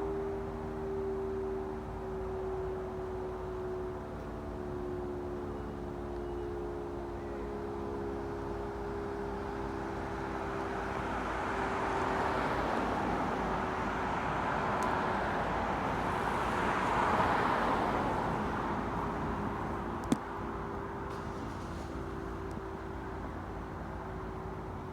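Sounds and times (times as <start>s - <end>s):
vehicle passing with tyre noise: 8.2s - 24.9s.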